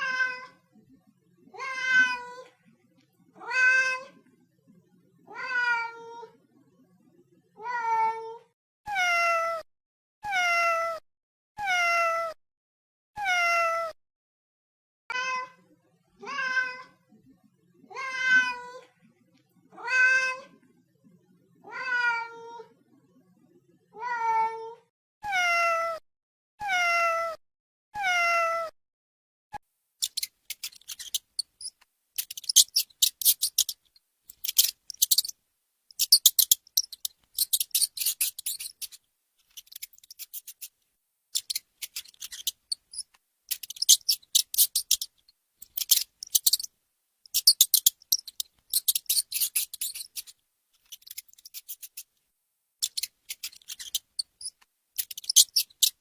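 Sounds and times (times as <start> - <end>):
cat meowing: 0.0 - 0.6, 1.5 - 2.5, 3.4 - 4.2, 5.3 - 6.4, 7.6 - 9.6, 10.2 - 11.0, 11.6 - 12.4, 16.2 - 17.0, 17.9 - 18.8, 19.7 - 20.6, 21.6 - 22.7, 24.0 - 26.0, 26.6 - 27.4, 28.0 - 28.7.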